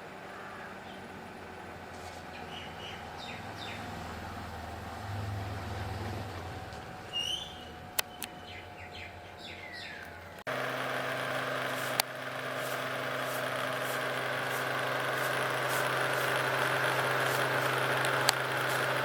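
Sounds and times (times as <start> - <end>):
outdoor background noise: 0.0 - 19.0
bird chirps: 2.3 - 4.0, 7.1 - 10.4
click: 8.0 - 8.3
small electric motor whirring: 10.5 - 19.0.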